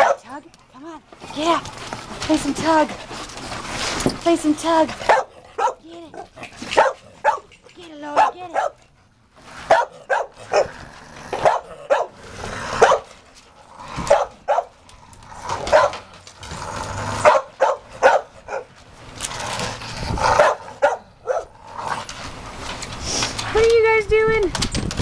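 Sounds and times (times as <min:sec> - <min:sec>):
large dogs barking: 0:00.0 - 0:00.4, 0:05.0 - 0:08.9, 0:09.6 - 0:13.2, 0:13.8 - 0:14.8, 0:15.4 - 0:18.8, 0:20.2 - 0:21.9.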